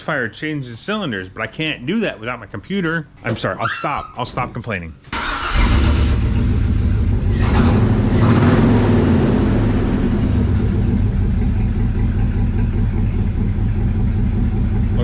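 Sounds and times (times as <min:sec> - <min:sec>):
car engine idling: 0:05.2 - 0:15.0.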